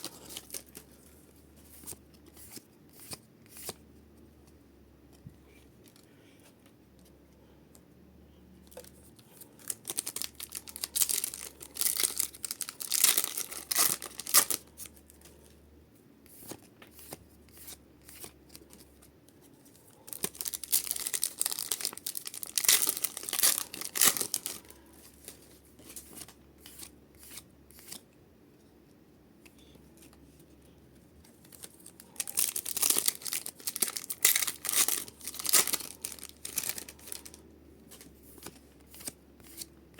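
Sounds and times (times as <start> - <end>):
card packs torn open: 9.6 - 14.7, 20.1 - 24.7, 31.5 - 39.7
wrappers crinkling: 9.6 - 14.7, 20.1 - 24.8, 31.5 - 37.4.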